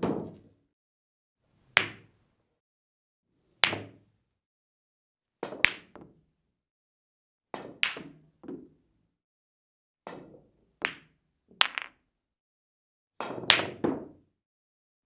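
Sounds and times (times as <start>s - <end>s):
billiard balls clicking together: 11.6s - 12.0s.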